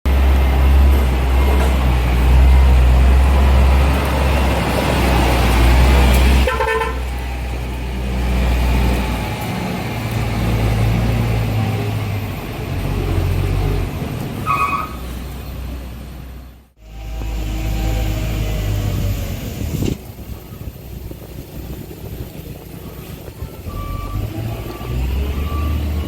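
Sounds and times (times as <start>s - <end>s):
truck engine humming: 0.1s - 26.0s
truck horn toot: 6.4s - 7.2s.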